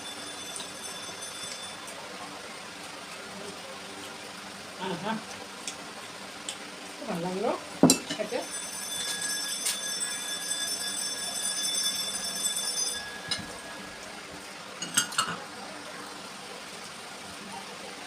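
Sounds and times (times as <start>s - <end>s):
high lingering ring: 8.1s - 14.3s
metal dishware clinking: 12.7s - 13.8s, 14.8s - 15.4s.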